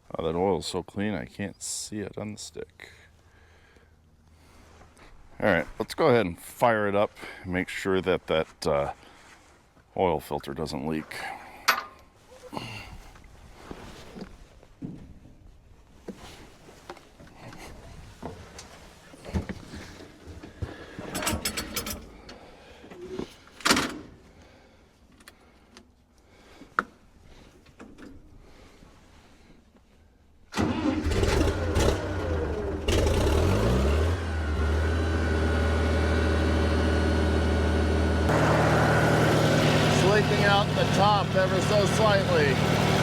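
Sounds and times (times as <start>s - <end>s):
tractor engine starting and idling: 21.0s - 22.5s, 30.5s - 43.0s.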